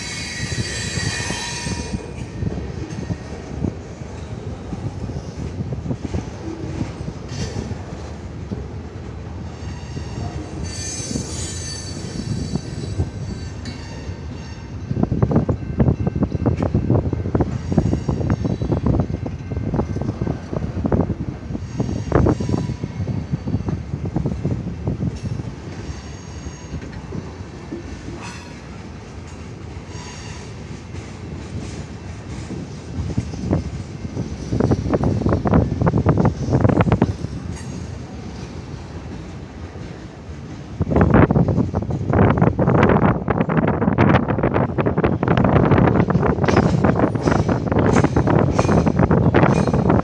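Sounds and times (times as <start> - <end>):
high wheel squeal: 0.0 - 2.2, 9.6 - 14.6
train wheels squealing: 0.0 - 3.4, 9.5 - 14.8, 17.3 - 19.0, 21.6 - 24.3, 25.2 - 35.6
rail joints clacking: 0.0 - 50.0
train rumbling past: 0.0 - 50.0.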